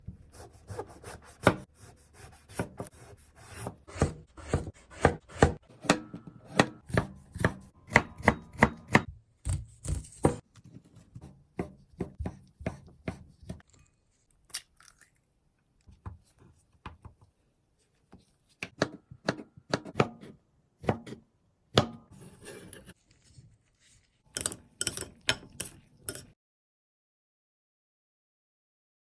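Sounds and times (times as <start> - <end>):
knife chopping on cutting board: 0.3 - 10.4, 18.6 - 22.0.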